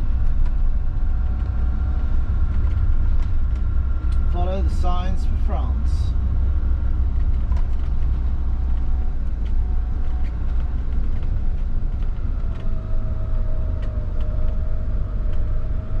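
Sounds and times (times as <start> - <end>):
diesel engine and tyres rumbling: 0.0 - 16.0
light ticks and rattles: 6.9 - 12.8.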